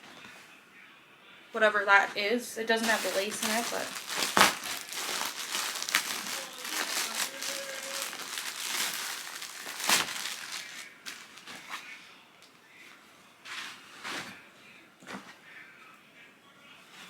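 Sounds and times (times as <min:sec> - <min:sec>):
plastic packaging crinkling: 0:02.7 - 0:11.8
sharp plastic crackle: 0:02.8 - 0:11.7.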